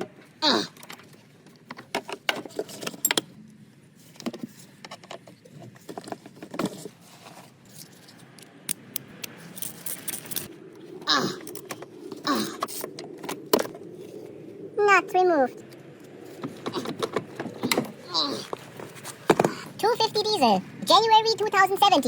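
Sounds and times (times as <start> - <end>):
wrench and metal parts clinking: 9.5 - 10.5.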